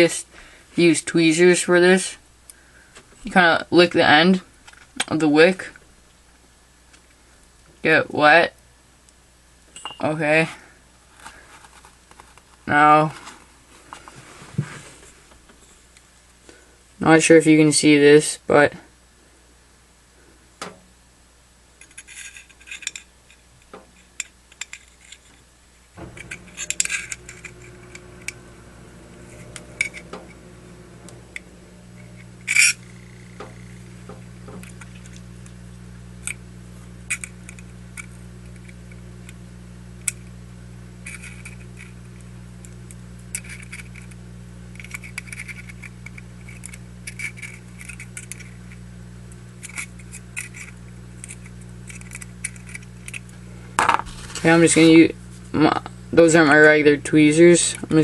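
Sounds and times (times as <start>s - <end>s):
steady low hum: 19.0s - 58.0s.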